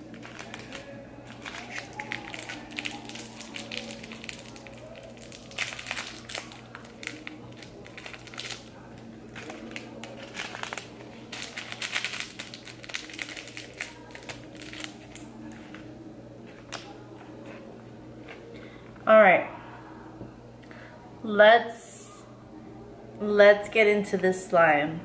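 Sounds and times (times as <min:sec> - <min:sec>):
plastic packaging crinkling: 0:00.0 - 0:15.9.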